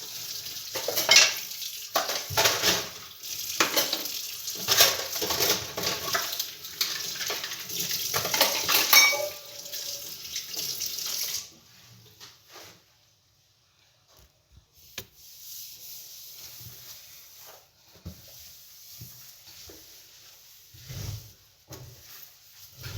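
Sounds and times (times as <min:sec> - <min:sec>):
tap water running into sink: 0:00.0 - 0:11.5
dishes and cutlery clattering: 0:00.7 - 0:03.0, 0:03.6 - 0:10.0.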